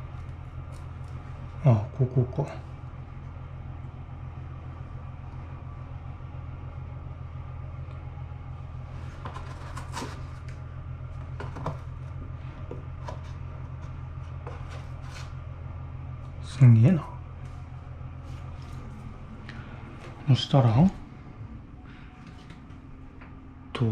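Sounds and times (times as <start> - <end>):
steady low hum: 0.0 - 23.9
parts scraping and rustling: 8.8 - 15.6.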